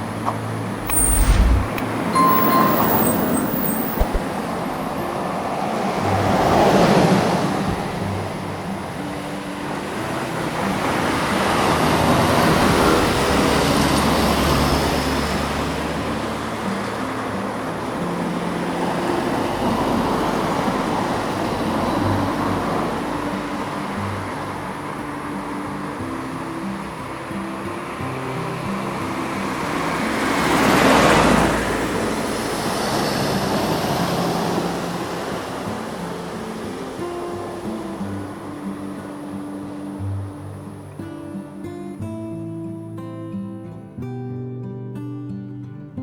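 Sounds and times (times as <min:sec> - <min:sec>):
road traffic: 0:00.0 - 0:40.9
vehicle passing close: 0:00.7 - 0:04.3
short high tone: 0:00.8 - 0:04.2.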